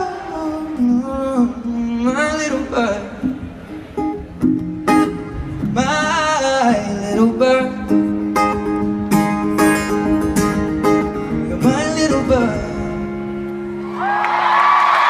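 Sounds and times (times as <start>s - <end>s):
man singing: 0.0s - 3.4s, 5.6s - 8.4s, 11.2s - 13.5s
acoustic guitar strumming: 0.0s - 14.0s.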